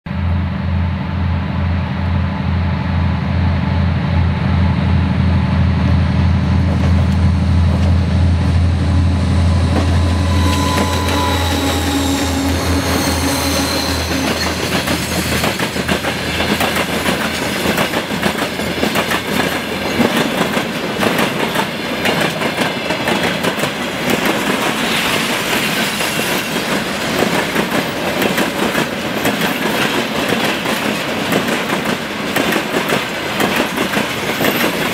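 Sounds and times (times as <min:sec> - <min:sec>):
diesel locomotive engine drone: 0:00.1 - 0:34.9
train cars rail clatter: 0:06.4 - 0:34.9
high wheel squeal: 0:08.8 - 0:16.4.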